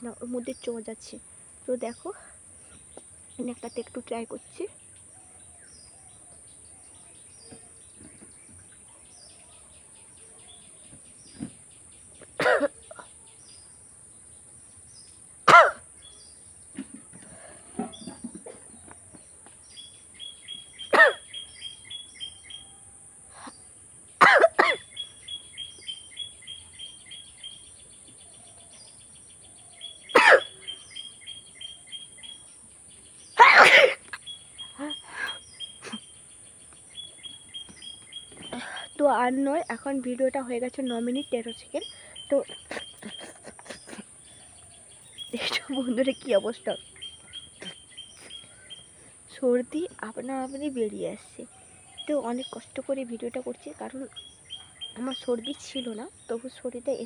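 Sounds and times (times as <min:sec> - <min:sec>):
woman sneezing hard: 0:15.5 - 0:15.8, 0:20.9 - 0:21.2, 0:24.2 - 0:24.8, 0:30.2 - 0:30.6, 0:33.4 - 0:34.2.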